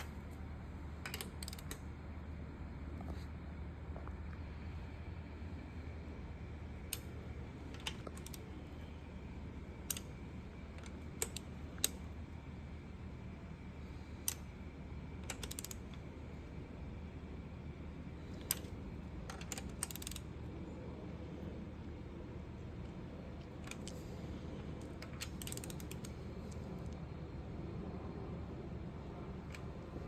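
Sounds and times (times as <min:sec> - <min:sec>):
steady low hum: 0:00.0 - 0:30.0
wrench and socket clicking: 0:01.0 - 0:01.8, 0:07.7 - 0:08.4, 0:10.8 - 0:12.0, 0:15.2 - 0:16.0, 0:19.3 - 0:20.3, 0:25.0 - 0:26.2.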